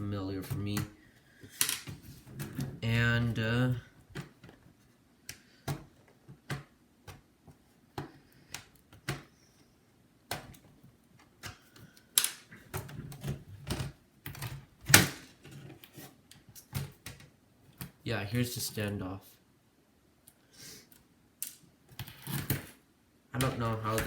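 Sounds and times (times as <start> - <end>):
plastic clips clicking and snapping: 11.4 - 15.2.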